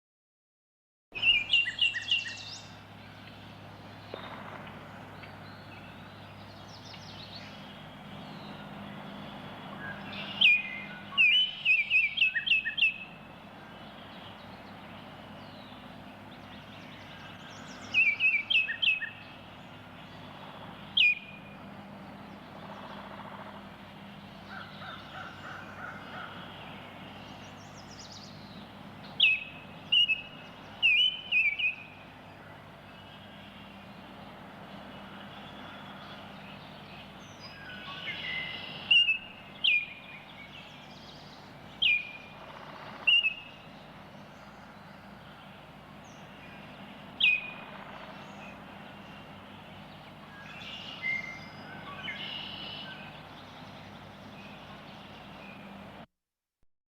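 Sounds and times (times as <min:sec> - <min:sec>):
bird whistling song: 0:01.2 - 0:03.4, 0:09.8 - 0:13.3, 0:16.4 - 0:20.2, 0:20.9 - 0:21.6, 0:26.7 - 0:32.0, 0:35.3 - 0:44.9, 0:46.1 - 0:48.6, 0:49.8 - 0:53.2
low background noise: 0:01.2 - 0:56.1.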